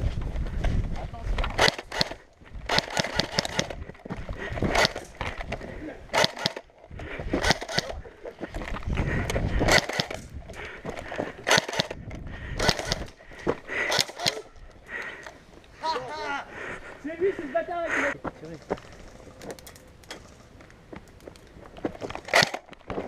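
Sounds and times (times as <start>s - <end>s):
sharp clicks and clatter: 1.4s - 3.8s, 4.7s - 6.7s, 7.4s - 8.0s, 9.2s - 10.4s, 11.0s - 13.2s, 13.8s - 15.4s, 22.0s - 23.0s.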